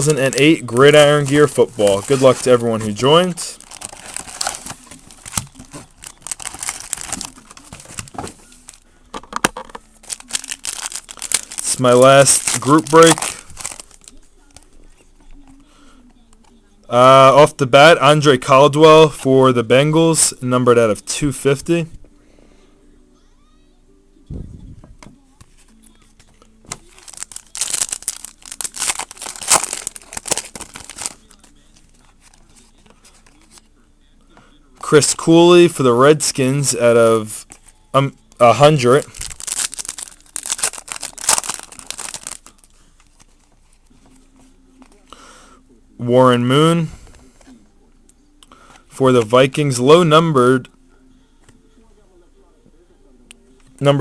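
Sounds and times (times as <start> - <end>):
wrapper crinkling and tearing: 0.0 - 8.8, 9.9 - 14.6, 26.7 - 33.6, 37.5 - 43.5.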